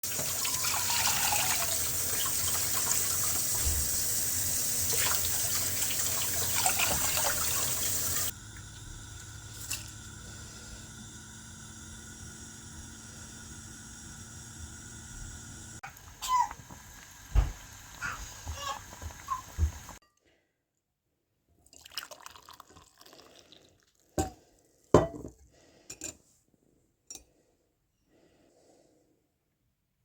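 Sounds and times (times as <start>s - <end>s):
water running from a tap: 0.0s - 20.0s
faint steady hum: 0.2s - 15.8s.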